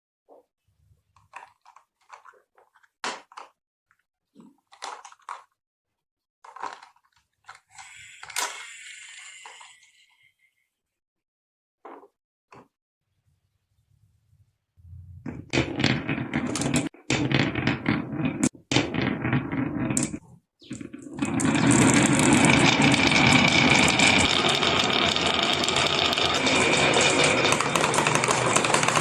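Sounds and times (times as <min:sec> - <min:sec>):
marbles clattering down a run: 0:15.5 - 0:29.0.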